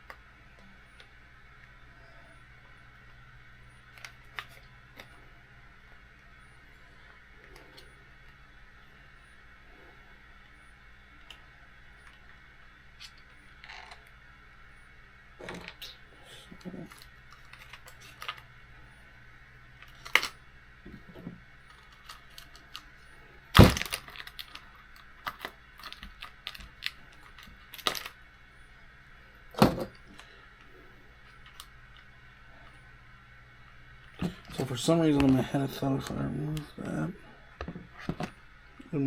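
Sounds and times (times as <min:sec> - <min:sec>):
faint steady hum: 0:00.0 - 0:39.0
plastic and metal parts clicking: 0:23.6 - 0:28.2.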